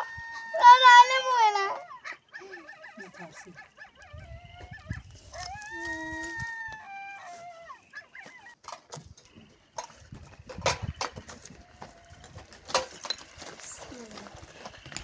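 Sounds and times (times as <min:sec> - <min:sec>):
animal howling: 0:00.0 - 0:08.6.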